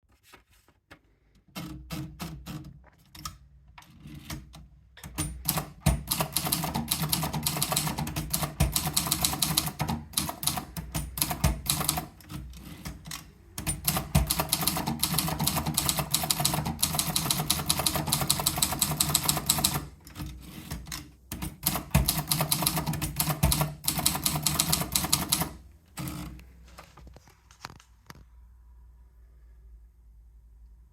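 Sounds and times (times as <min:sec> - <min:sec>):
typewriter keys clacking: 0:04.1 - 0:26.4.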